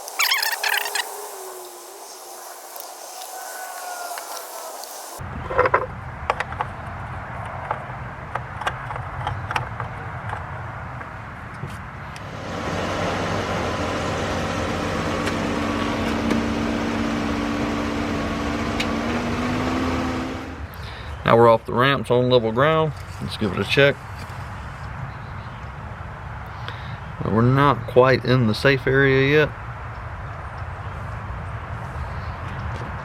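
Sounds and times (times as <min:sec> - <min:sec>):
car engine running: 0:12.2 - 0:20.7.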